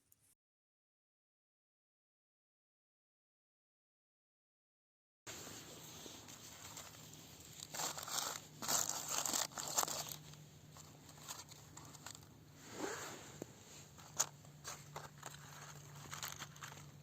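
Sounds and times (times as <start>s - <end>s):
crinkling and rustling handling noise: 5.3s - 17.0s.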